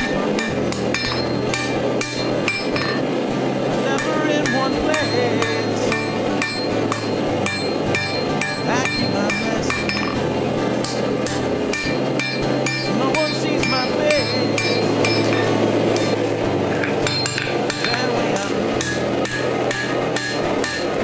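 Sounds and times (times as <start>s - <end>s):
hammer ringing on anvil: 0.0s - 3.0s, 4.0s - 10.2s, 11.7s - 16.2s, 17.0s - 19.4s
steady low hum: 0.0s - 21.0s.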